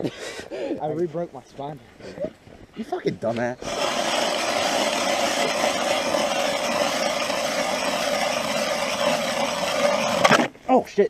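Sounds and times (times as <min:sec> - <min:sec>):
ice auger drilling into ice: 0:03.6 - 0:10.5.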